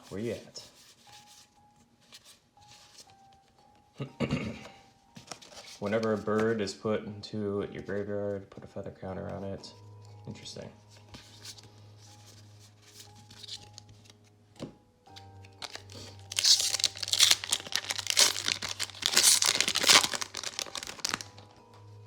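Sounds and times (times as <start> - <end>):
soft background music: 0.0 - 22.0
foil wrapper crinkling and tearing: 15.4 - 21.6.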